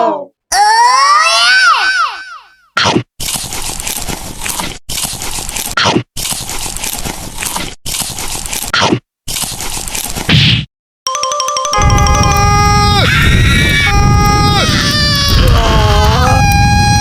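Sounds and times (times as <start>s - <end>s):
crunching and chewing: 3.2s - 10.3s.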